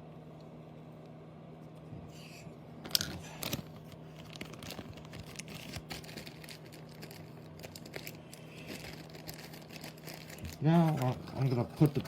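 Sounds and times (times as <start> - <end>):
packaging crinkling and rustling: 2.9 - 12.0.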